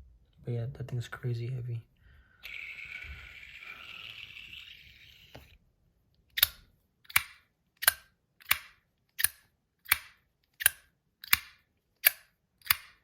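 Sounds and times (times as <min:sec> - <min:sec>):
fidget toy slider clicking: 0:02.4 - 0:05.6, 0:06.3 - 0:13.0.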